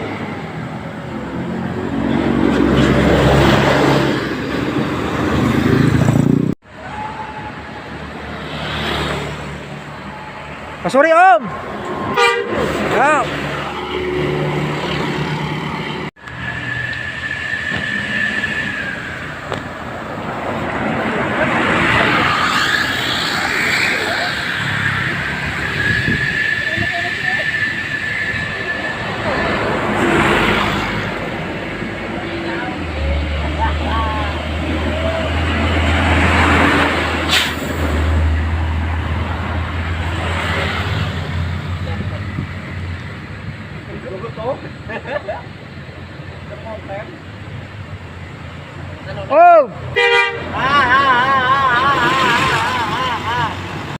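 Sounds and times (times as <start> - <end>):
road noise: 0.0 - 53.9
bus driving past: 11.4 - 53.9
air-brake hiss: 37.2 - 37.9.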